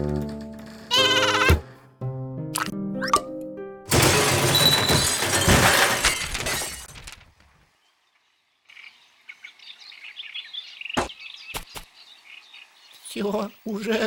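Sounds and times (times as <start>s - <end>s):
wooden bench smashing: 3.9s - 7.5s
birds chirping: 7.7s - 14.0s.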